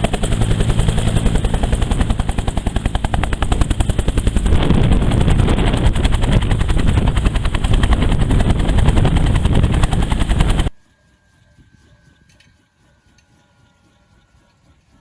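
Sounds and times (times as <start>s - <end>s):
helicopter rotor blade slap: 0.0s - 10.8s
helicopter turbine noise: 0.0s - 15.0s.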